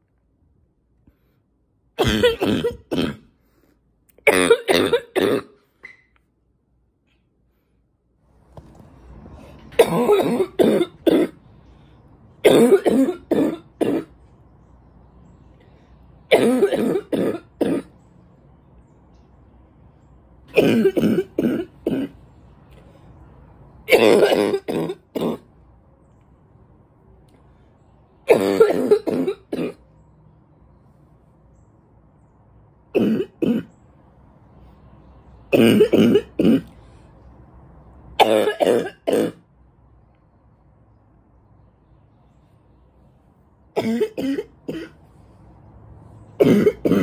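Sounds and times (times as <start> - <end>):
woman coughing: 2.0 - 3.2, 12.5 - 14.1, 16.3 - 17.9, 28.3 - 29.8, 43.8 - 45.0.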